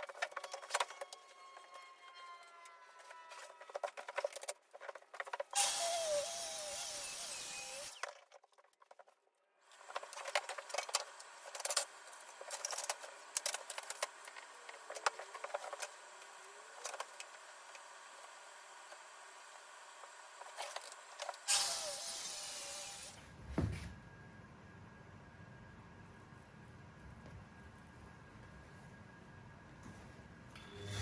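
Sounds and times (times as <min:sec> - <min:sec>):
workshop power tool running: 0:05.4 - 0:08.1, 0:09.7 - 0:23.2, 0:30.6 - 0:31.0.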